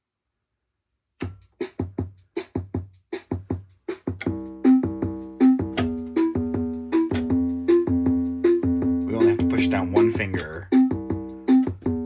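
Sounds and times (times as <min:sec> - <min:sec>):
drum machine beat: 0:01.2 - 0:12.0
keyboard chords and bass line: 0:01.3 - 0:12.0.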